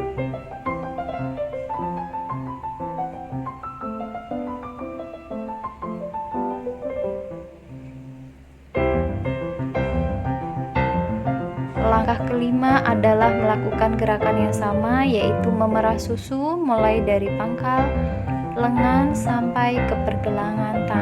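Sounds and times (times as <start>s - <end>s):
gentle piano melody: 0.0s - 21.0s.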